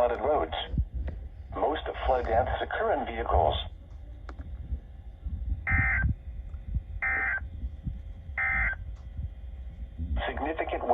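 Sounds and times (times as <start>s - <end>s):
low rumble: 0.0s - 10.9s
data tone bursts: 5.7s - 6.1s, 7.0s - 7.4s, 8.4s - 8.8s.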